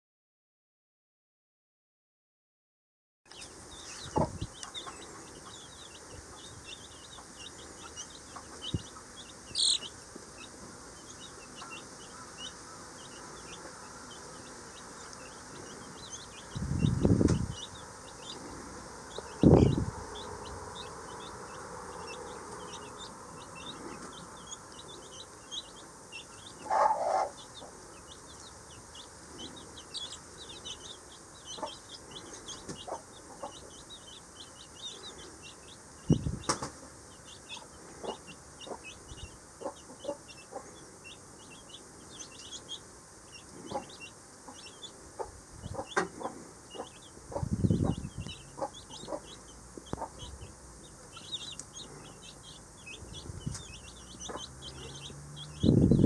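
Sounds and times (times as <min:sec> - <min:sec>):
baby chicks peeping: 0:03.3 - 0:56.0
low thumps: 0:04.1 - 0:04.5.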